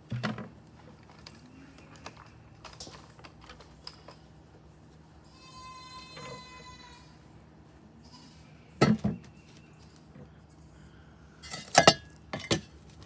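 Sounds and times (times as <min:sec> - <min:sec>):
goat bleating: 0:05.2 - 0:07.2, 0:08.0 - 0:08.6.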